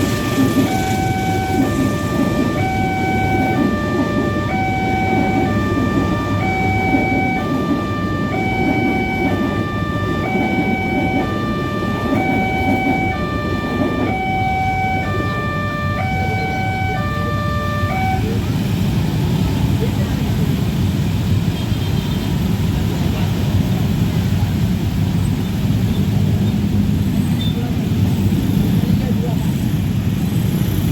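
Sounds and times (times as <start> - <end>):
two-tone level crossing siren: 0.0 - 18.5
low traffic rumble: 0.0 - 30.9.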